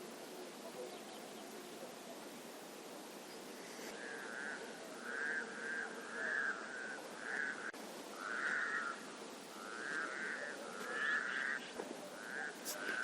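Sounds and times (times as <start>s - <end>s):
frogs calling: 3.4s - 13.0s.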